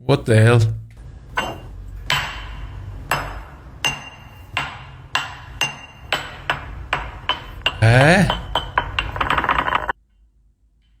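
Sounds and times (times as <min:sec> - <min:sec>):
hammer striking ringing metal: 0:01.0 - 0:09.4.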